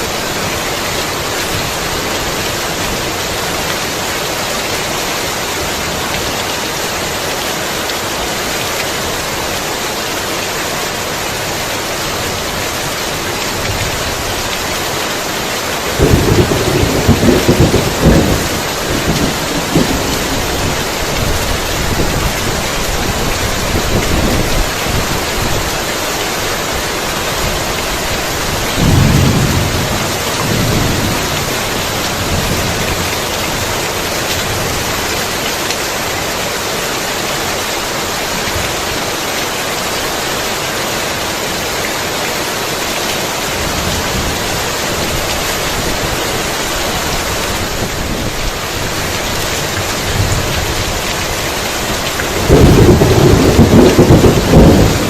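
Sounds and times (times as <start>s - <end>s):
heavy rain pouring: 0.0s - 55.0s
rolling thunder: 15.9s - 23.1s, 28.8s - 33.2s, 52.3s - 55.0s.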